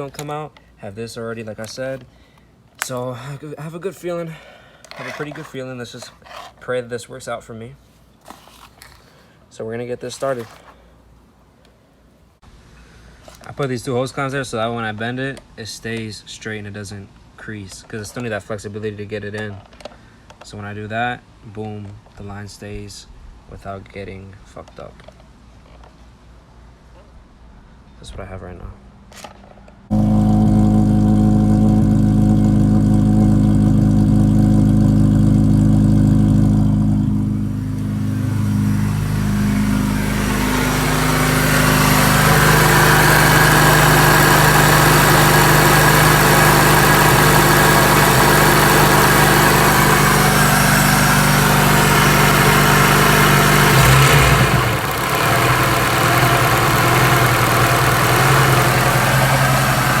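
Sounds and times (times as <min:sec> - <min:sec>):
car engine running: 0:29.9 - 1:00.0
rushing noise: 0:37.1 - 0:44.6.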